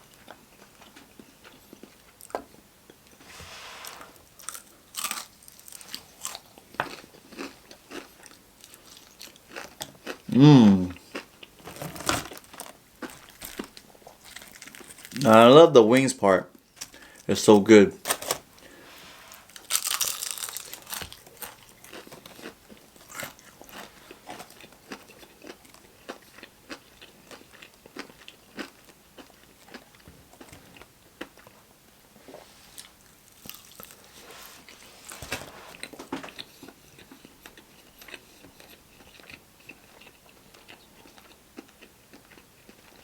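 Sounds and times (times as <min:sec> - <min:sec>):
crunchy biting of fried chicken: 0:04.4 - 0:15.0, 0:19.6 - 0:29.9
wet chewing: 0:19.5 - 0:30.6.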